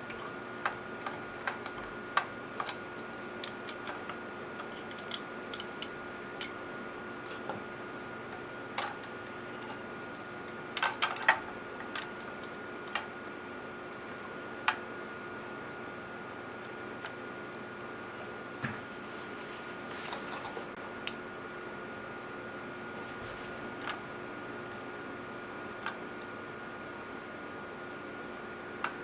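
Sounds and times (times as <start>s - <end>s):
hardware clicks and taps: 0.0s - 6.6s
electrical hum: 0.0s - 29.0s
faint constant tones: 0.0s - 29.0s.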